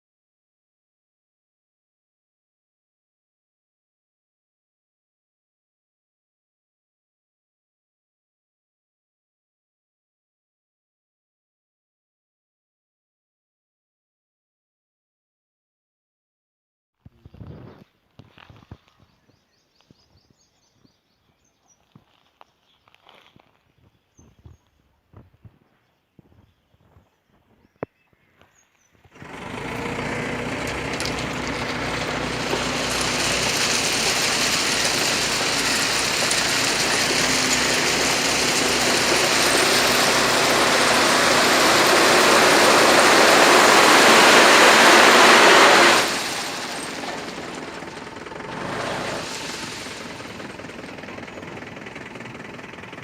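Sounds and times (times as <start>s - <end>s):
truck engine running: 29.2s - 53.0s
stone sliding out clattering: 29.6s - 47.6s.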